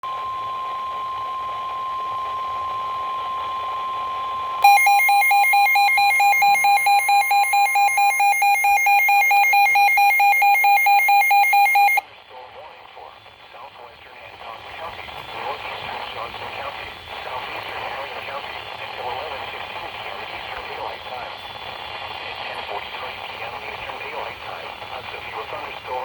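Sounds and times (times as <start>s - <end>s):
steady warning tone: 0.1s - 12.0s
fast harsh alarm beeping: 4.6s - 12.0s.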